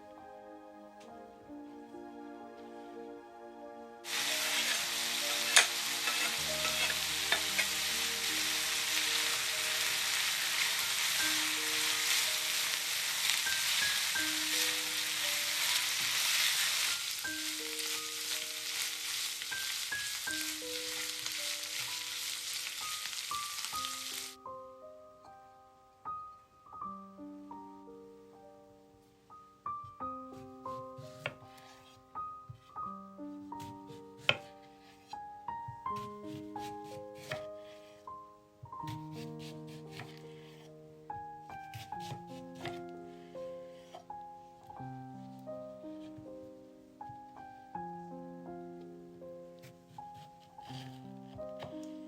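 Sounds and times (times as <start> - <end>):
soft music of single notes: 0.0 - 52.0
food sizzling in a frying pan: 4.0 - 24.4.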